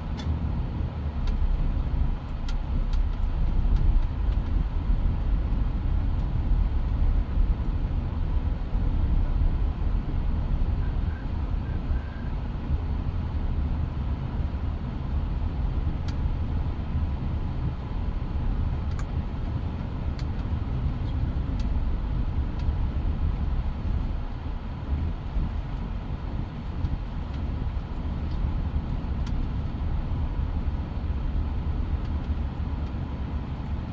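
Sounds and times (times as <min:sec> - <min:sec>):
car engine rumble: 0:00.0 - 0:33.9
road noise: 0:00.0 - 0:33.9.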